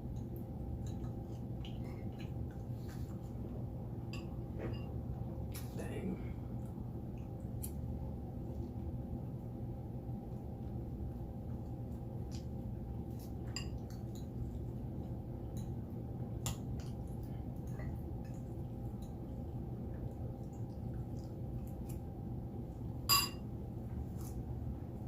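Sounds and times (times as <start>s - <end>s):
steady low hum: 0.0s - 25.0s
cutlery clinking on dish: 23.1s - 23.4s.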